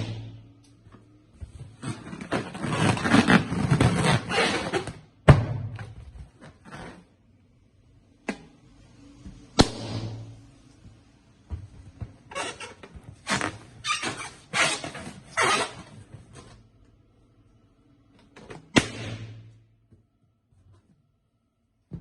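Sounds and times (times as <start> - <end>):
balloon rubbing and rustling: 1.6 - 5.2
balloons popping: 9.5 - 10.4, 18.6 - 19.6.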